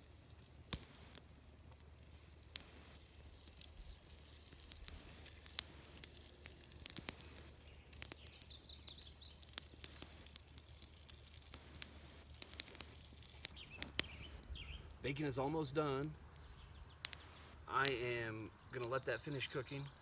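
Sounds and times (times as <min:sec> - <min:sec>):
bacon frying: 0:00.0 - 0:20.0
campfire popping and crackling: 0:00.0 - 0:20.0
bird chirping: 0:06.6 - 0:10.4, 0:13.1 - 0:20.0.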